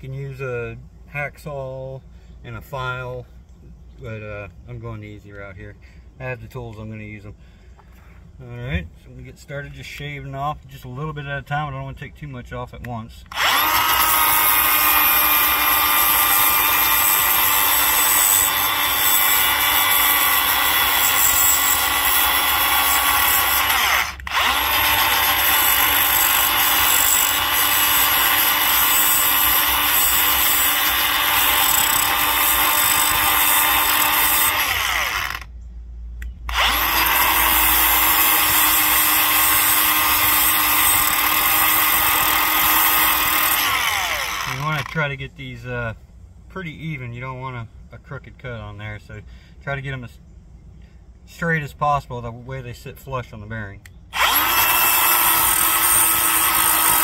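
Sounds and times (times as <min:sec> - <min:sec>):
angle grinder grinding metal: 0:13.3 - 0:35.5, 0:36.5 - 0:45.0, 0:54.2 - 0:57.0.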